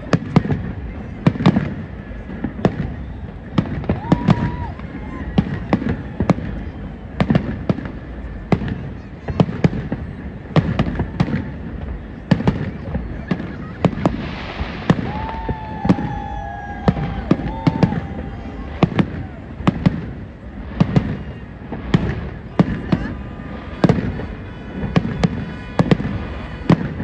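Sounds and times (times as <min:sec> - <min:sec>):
fireworks bursting with bangs: 0:00.0 - 0:27.0.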